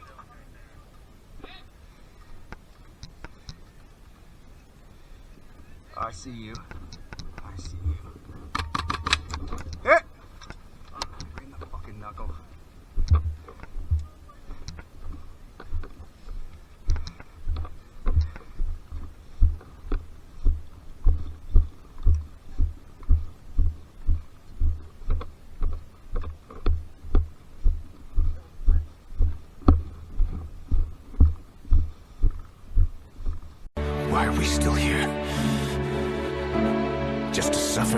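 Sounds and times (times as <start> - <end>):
footsteps as dull thumps: 6.4 - 33.7.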